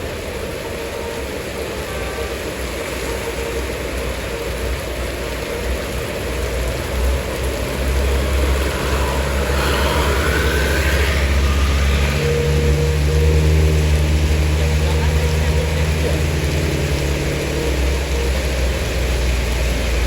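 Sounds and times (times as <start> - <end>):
bus engine running low: 0.0 - 20.0
tyres hissing on road: 0.0 - 20.0
faint rising whine: 6.2 - 19.4.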